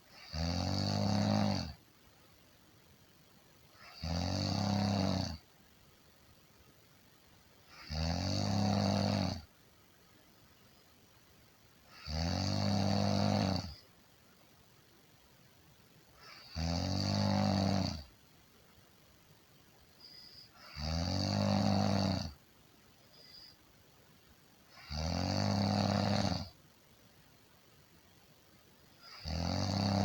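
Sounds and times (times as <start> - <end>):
person snoring: 0.1 - 1.8, 3.8 - 5.4, 7.7 - 9.5, 11.9 - 13.8, 16.2 - 18.1, 20.0 - 22.4, 24.7 - 26.6, 29.0 - 30.0.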